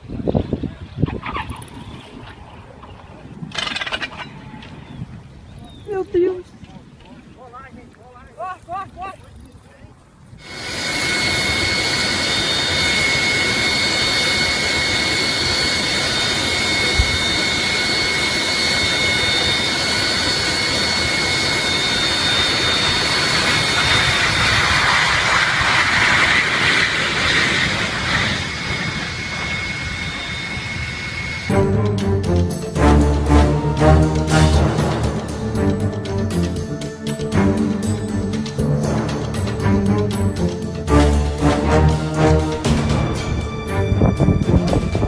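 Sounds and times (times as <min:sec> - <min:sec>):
jet engine turbine whine: 0:10.3 - 0:45.0.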